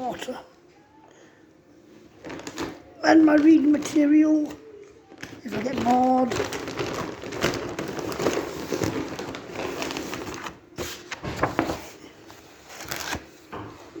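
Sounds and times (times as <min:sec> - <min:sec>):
bag rustling: 0:01.8 - 0:14.0
items clicking and knocking: 0:02.2 - 0:12.0.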